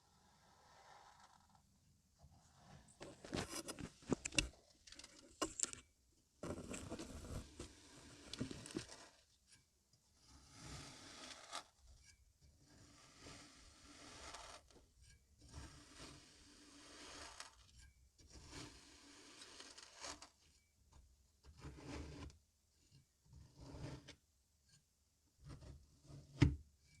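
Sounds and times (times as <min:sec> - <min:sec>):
kinetic sand being cut: 0:12.8 - 0:14.6, 0:15.7 - 0:17.6.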